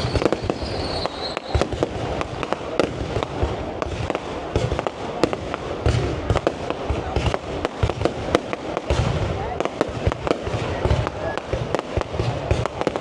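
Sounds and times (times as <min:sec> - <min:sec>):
firework high whistle: 0:00.0 - 0:01.9
fireworks bangs and booms: 0:00.0 - 0:13.0.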